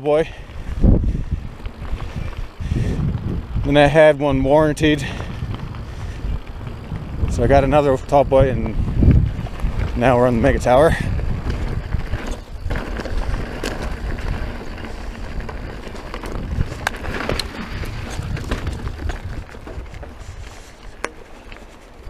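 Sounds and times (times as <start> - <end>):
wind noise on microphone: 0.0 - 22.0
tyres rolling over dirt and stones: 0.5 - 22.0
sharp clicks and rattles: 5.1 - 21.8.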